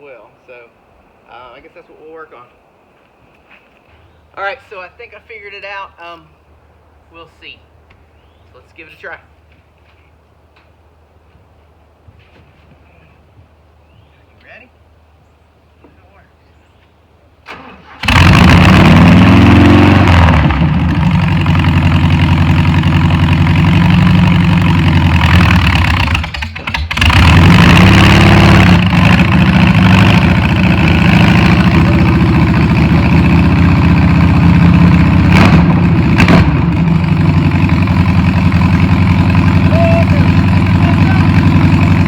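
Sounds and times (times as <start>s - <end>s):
car engine running: 18.0s - 42.0s.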